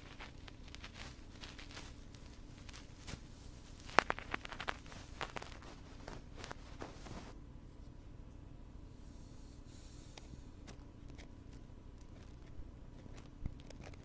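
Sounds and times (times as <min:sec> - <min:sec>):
soft scratching on microphone: 0:00.0 - 0:07.4
faint steady hum: 0:00.0 - 0:14.0.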